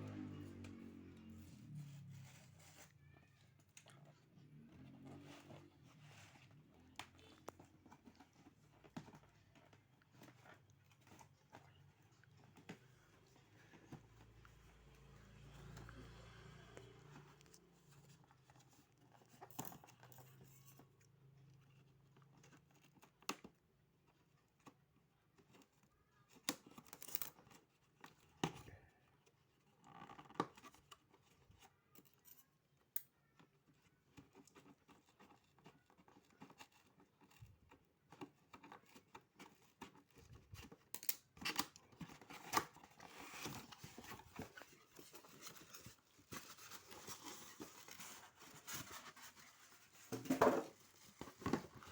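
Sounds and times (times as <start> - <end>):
packaging clicks and rustles: 25.4 - 28.7, 33.2 - 51.9.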